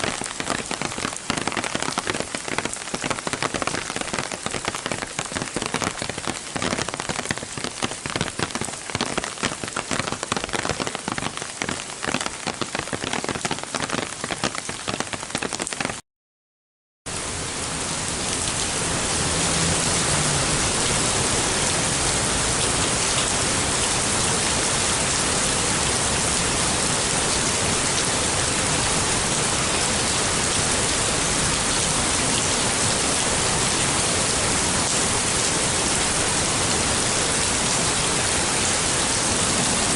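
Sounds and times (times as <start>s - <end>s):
heavy rain hiss: 0.0s - 15.8s, 17.1s - 39.9s
raindrops striking umbrella: 0.0s - 16.0s.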